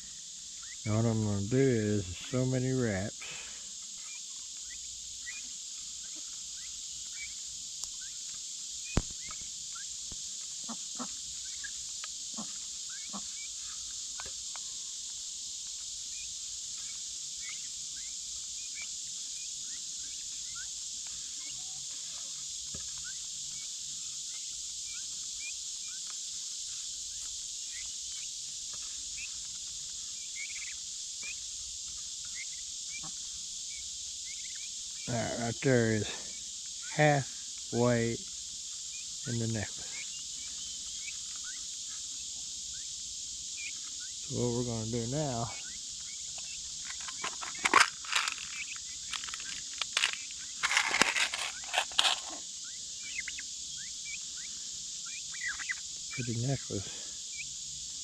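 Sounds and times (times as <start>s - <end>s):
high-pitched insect chorus: 0.0s - 58.0s
sharp clicks: 46.9s - 52.4s.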